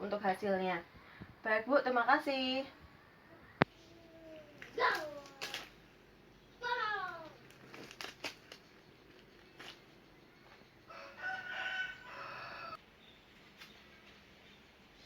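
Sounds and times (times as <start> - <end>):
rooster crowing: 10.8 - 12.8.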